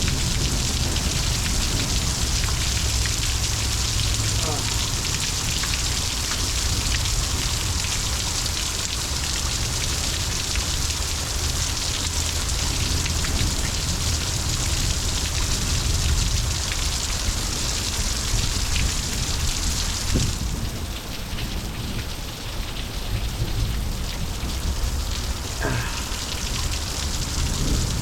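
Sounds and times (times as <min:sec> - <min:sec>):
heavy rain hissing: 0:00.0 - 0:28.0
low thunder rumble: 0:23.0 - 0:28.0.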